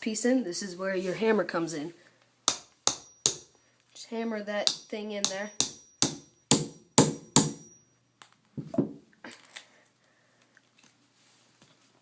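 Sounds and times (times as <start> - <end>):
hammer striking plastic cube: 4.7 - 7.7.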